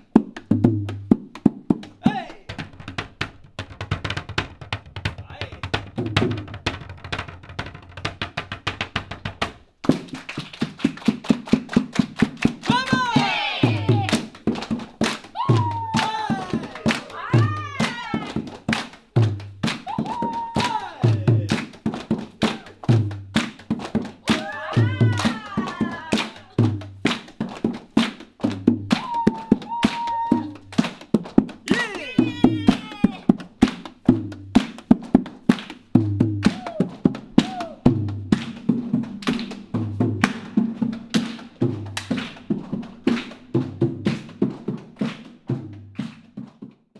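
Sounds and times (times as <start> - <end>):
body percussion claps and slaps: 0.0 - 46.9
deep beats: 11.6 - 46.0.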